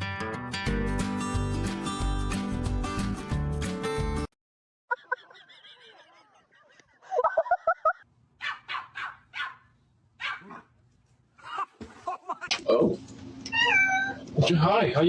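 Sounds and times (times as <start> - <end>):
dog yipping: 8.4 - 10.7
dog barking: 8.4 - 10.8.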